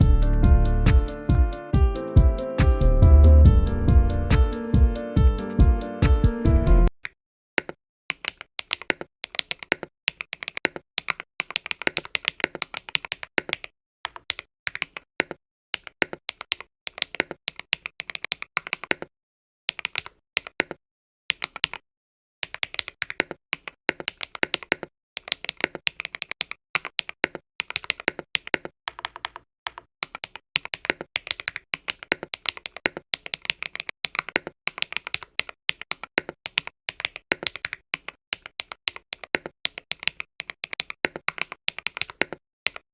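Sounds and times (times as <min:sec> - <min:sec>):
fast typing on mechanical keyboard: 0:08.2 - 0:19.1, 0:19.7 - 0:21.8, 0:22.4 - 0:42.9.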